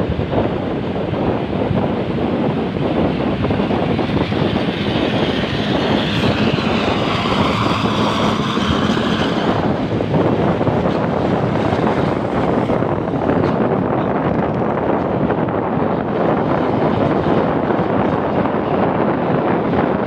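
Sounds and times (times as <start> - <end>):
bus engine and road noise: 0.0 - 20.0
wind on microphone: 0.0 - 20.0.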